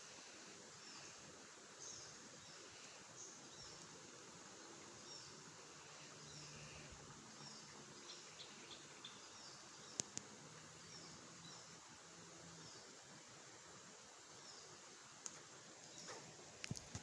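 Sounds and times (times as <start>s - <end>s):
insect hiss: 0.0s - 17.0s.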